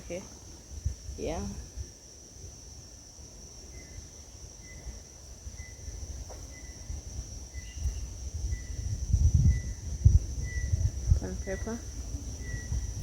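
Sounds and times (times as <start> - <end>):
insects droning: 0.0 - 13.0
low rumbling on microphone: 6.9 - 13.0.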